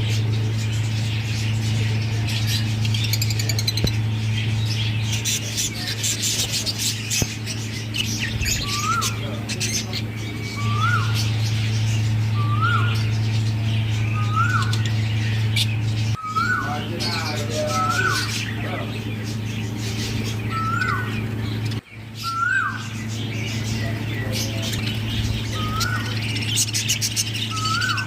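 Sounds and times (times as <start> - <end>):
parrots chirping and chattering: 0.0 - 28.0
steady low hum: 0.0 - 28.0
bird rising-and-falling call: 22.2 - 22.9.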